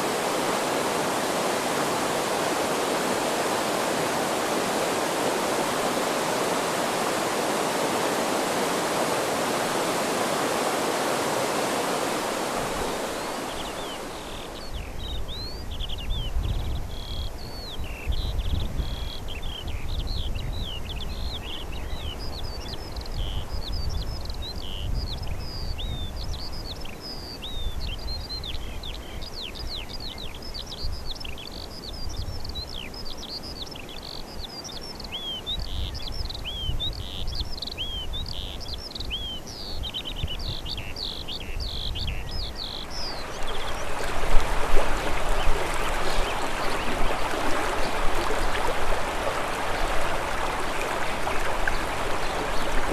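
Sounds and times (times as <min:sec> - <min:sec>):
stream rushing: 0:00.0 - 0:14.9, 0:42.4 - 0:52.9
small birds chirping: 0:00.0 - 0:52.9.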